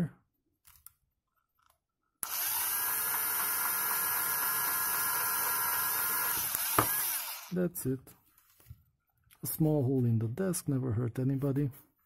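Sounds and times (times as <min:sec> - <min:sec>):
electric drill boring through metal: 0:02.2 - 0:07.6.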